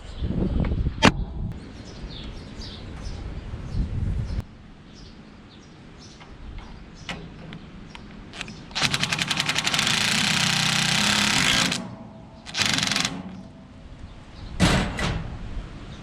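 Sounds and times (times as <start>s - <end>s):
impact wrench hammering: 8.7s - 13.5s.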